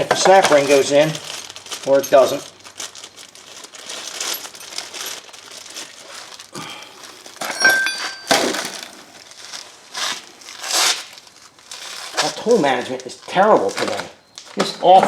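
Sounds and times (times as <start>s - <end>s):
metal parts clinking: 0.2s - 1.2s, 4.0s - 5.3s, 7.4s - 9.0s.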